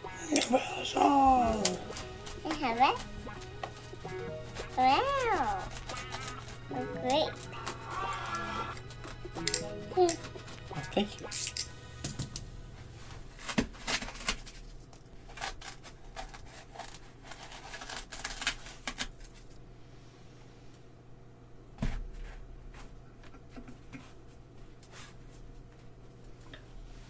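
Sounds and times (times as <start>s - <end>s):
balisong handles clicking: 1.5s - 12.5s.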